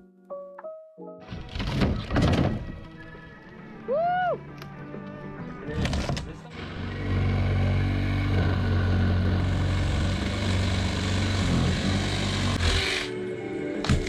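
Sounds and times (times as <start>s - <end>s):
motor droning: 6.5s - 13.3s.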